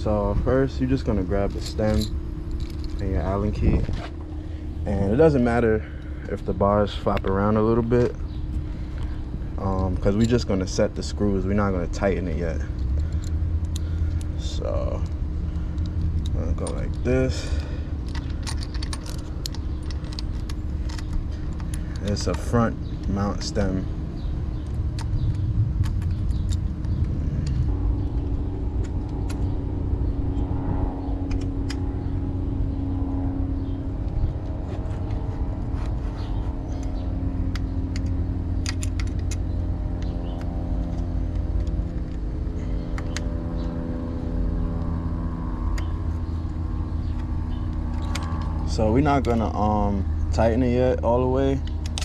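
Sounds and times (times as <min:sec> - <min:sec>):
vehicle engine running: 0:00.0 - 0:52.0
metallic clicks of tools: 0:18.0 - 0:23.7, 0:35.8 - 0:42.2.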